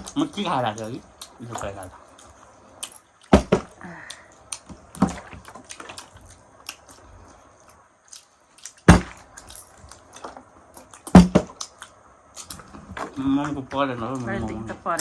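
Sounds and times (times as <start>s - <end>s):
bottle landing with a knock: 3.3s - 3.7s, 8.9s - 9.2s, 11.1s - 11.5s.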